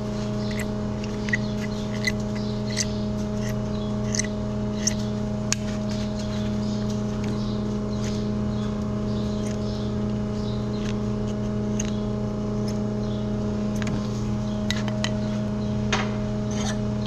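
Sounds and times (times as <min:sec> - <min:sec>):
hand tools scraping hoof: 0:00.0 - 0:05.7, 0:16.4 - 0:16.8
machine hum: 0:00.0 - 0:17.0.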